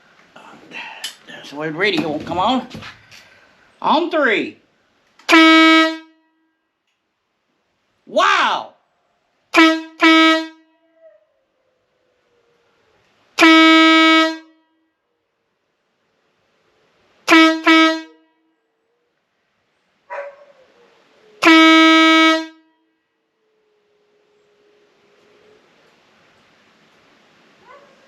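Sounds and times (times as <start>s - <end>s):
motorcycle air horn blasts: 5.3s - 6.2s, 9.5s - 10.7s, 13.4s - 14.6s, 17.3s - 18.2s, 21.4s - 22.7s
dog howling softly: 10.8s - 13.2s, 20.1s - 21.4s, 23.2s - 26.0s, 27.6s - 28.0s.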